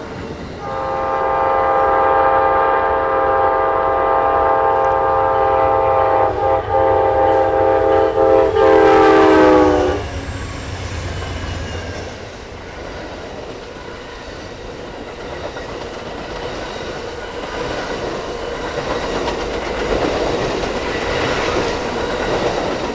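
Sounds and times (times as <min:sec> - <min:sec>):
train rumble: 0:00.0 - 0:22.9
locomotive air horn: 0:00.6 - 0:10.3
wheels clacking on rails: 0:03.5 - 0:22.9.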